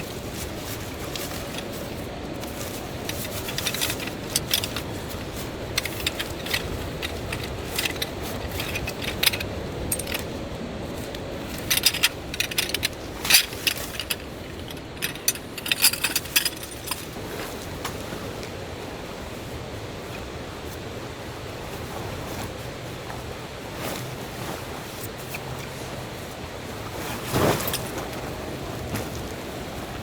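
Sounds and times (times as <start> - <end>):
metallic clinks and rattles: 0.1 - 10.5, 11.1 - 17.3, 27.4 - 27.9.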